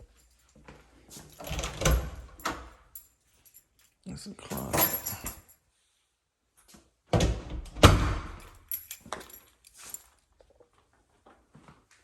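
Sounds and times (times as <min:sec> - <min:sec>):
closet door knocks shut: 0:07.2 - 0:08.4.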